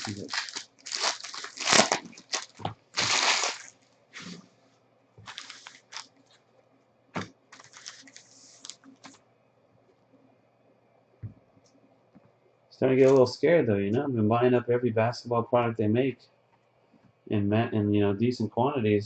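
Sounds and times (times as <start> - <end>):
plastic wrapping crinkling and tearing: 0.0 - 4.4, 5.2 - 6.4, 7.2 - 9.2.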